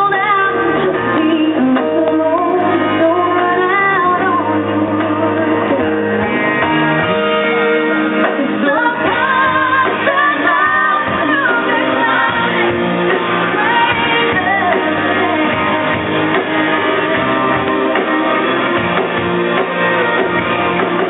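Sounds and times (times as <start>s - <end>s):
woman singing with vibrato: 0.0s - 6.0s, 8.2s - 17.9s
guitar accompaniment: 0.0s - 21.0s.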